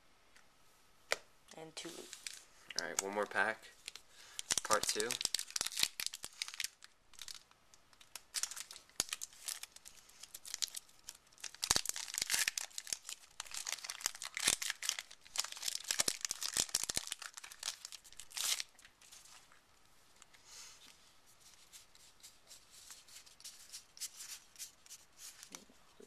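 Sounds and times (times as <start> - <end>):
foil wrapper crinkling and tearing: 3.8 - 19.4.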